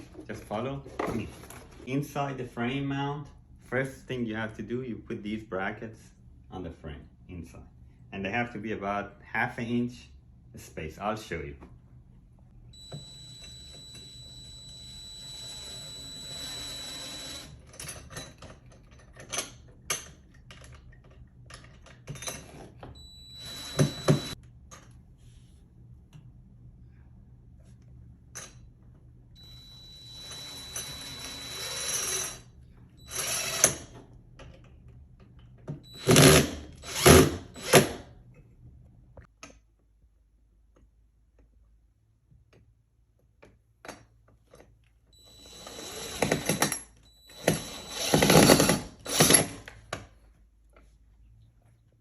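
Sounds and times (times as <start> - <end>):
cordless drill driving screws: 12.9 - 17.6, 23.4 - 24.4, 29.4 - 32.4, 33.1 - 33.9, 35.9 - 38.0, 45.3 - 46.7, 47.3 - 49.6.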